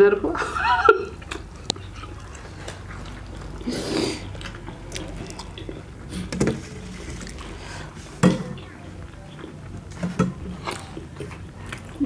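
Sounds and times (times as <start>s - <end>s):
low steady hum: 0.0s - 12.0s
wet chewing mouth clicks: 1.2s - 5.9s.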